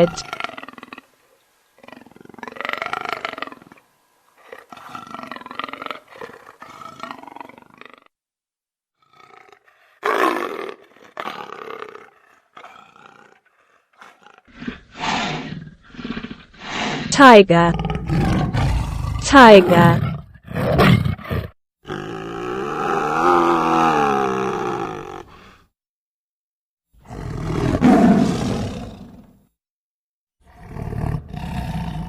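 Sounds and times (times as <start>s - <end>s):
leopard vocalizing: 0.0s - 8.1s.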